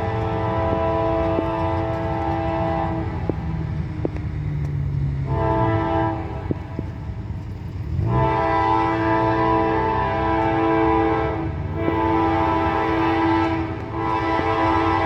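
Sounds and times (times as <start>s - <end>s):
locomotive air horn blasts: 0.0s - 3.5s, 5.2s - 6.9s, 8.0s - 15.0s
diesel engine rumble: 0.0s - 15.0s.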